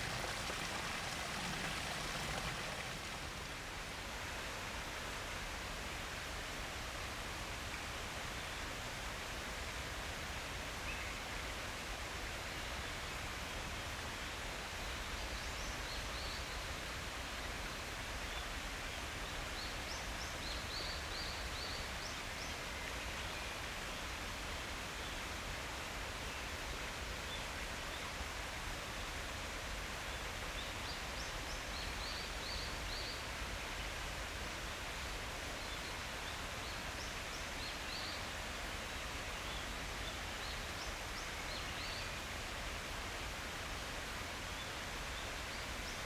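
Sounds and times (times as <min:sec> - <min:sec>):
rushing forest ambience: 0:00.0 - 0:46.0.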